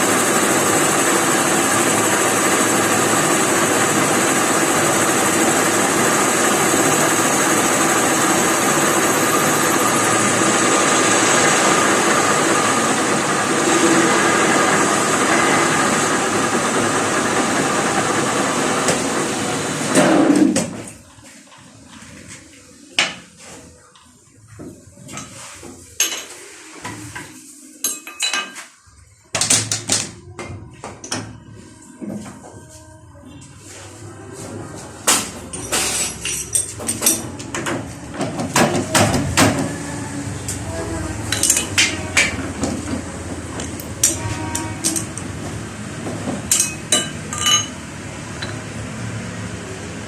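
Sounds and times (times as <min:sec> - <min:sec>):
metal lathe running: 0:00.0 - 0:20.3, 0:35.0 - 0:50.0.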